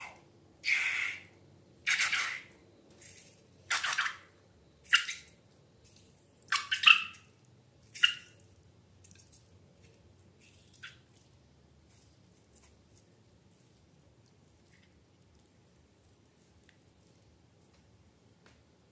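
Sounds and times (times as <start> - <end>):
wet slime squelches: 0.0 - 18.4.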